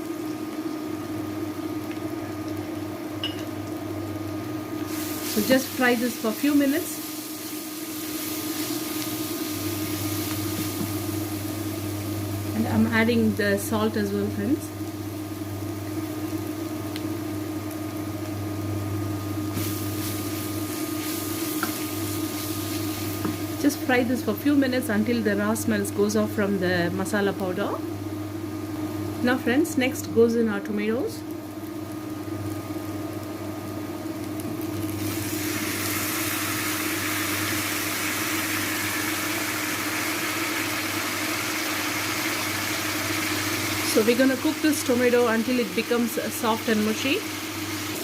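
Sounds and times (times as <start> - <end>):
steady mechanical hum: 0.0 - 48.0
paste sizzling in a pan: 4.6 - 12.8, 14.8 - 24.5, 34.2 - 48.0.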